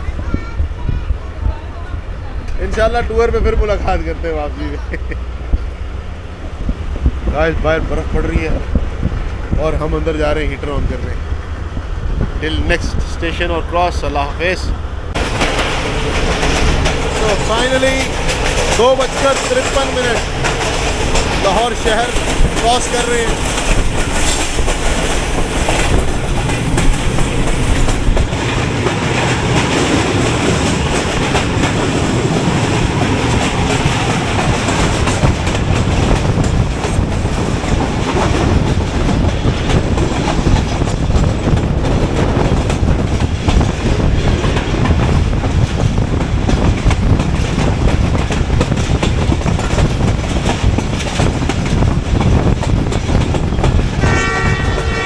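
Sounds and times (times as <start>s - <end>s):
train rumble with wheels clacking: 0.0s - 55.0s
locomotive horn: 54.0s - 55.0s.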